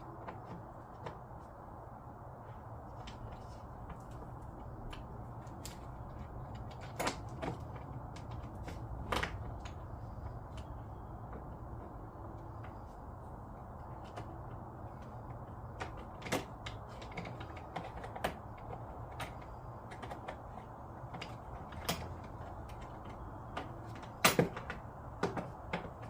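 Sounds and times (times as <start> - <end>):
hard plastic parts knocking: 14.0 - 26.0.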